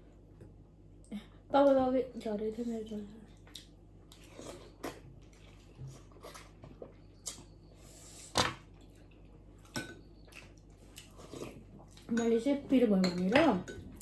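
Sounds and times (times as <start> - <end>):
person chewing noodles: 3.5 - 12.1.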